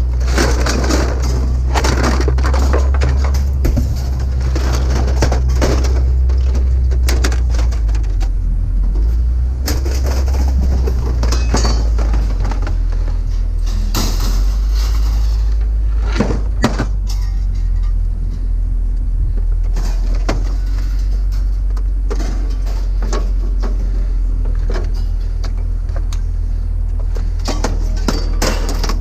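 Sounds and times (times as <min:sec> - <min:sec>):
scrap knocking and clanking: 0:00.0 - 0:18.5, 0:19.3 - 0:26.3, 0:26.9 - 0:29.0
low rumble: 0:00.0 - 0:29.0.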